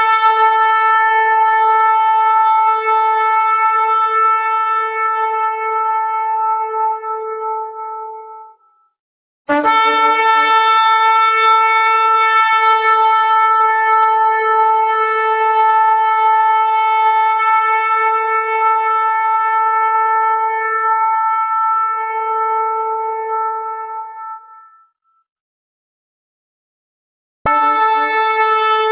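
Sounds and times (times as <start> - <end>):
ram's horn blast: 9.5 - 24.8, 27.5 - 28.9.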